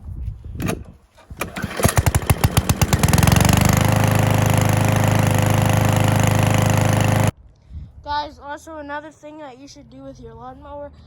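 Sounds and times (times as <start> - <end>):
lawn mower engine starting: 0.6 - 7.3.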